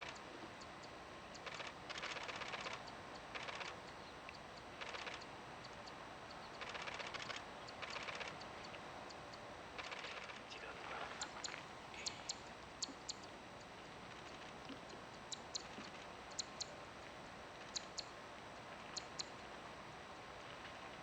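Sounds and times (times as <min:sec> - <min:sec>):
bird rapid clicking call: 0:00.0 - 0:08.8, 0:09.8 - 0:10.4, 0:11.1 - 0:13.3, 0:14.2 - 0:16.7, 0:17.6 - 0:18.1, 0:18.9 - 0:19.3.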